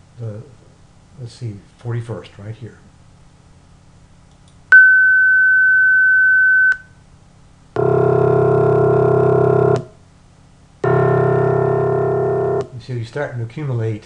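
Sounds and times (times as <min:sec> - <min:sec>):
high sine tone: 0:04.7 - 0:07.0, 0:07.8 - 0:10.0, 0:10.8 - 0:12.7
low buzzy synthesized tone: 0:07.8 - 0:10.0, 0:10.8 - 0:12.8.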